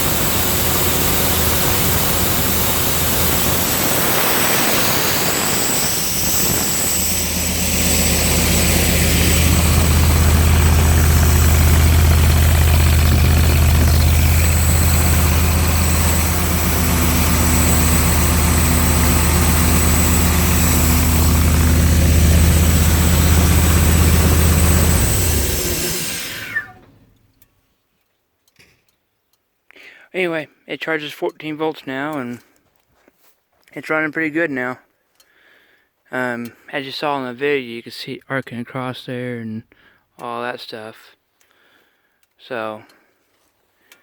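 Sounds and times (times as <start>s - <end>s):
air compressor engine humming: 0.0s - 27.0s.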